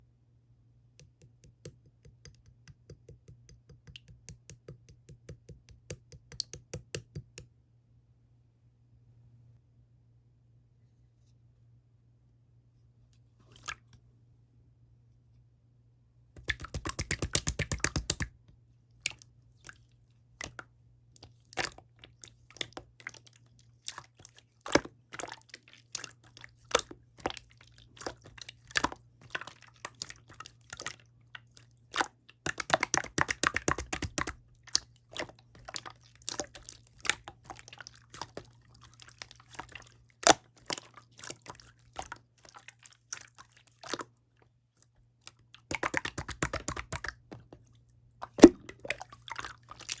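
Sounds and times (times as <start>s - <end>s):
slime squishing: 16.4s - 18.4s, 19.1s - 50.0s.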